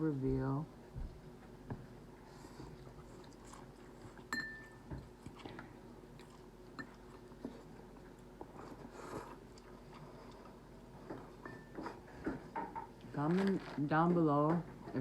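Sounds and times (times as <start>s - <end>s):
chewing and biting: 2.5s - 12.1s.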